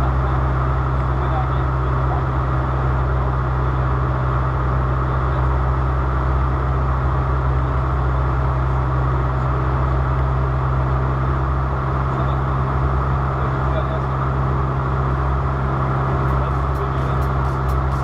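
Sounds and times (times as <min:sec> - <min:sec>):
engine drone with low hum: 0:00.0 - 0:18.0.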